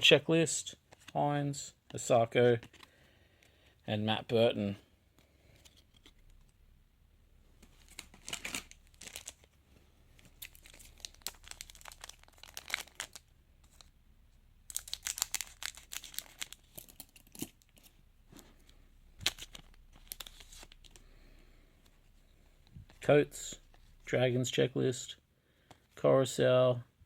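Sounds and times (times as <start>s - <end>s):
card packet tearing open: 7.8s - 9.5s, 10.2s - 13.9s, 14.7s - 17.9s, 19.2s - 21.0s
wrapper crinkling: 7.8s - 9.5s, 10.2s - 13.9s, 14.7s - 17.9s, 19.2s - 21.0s.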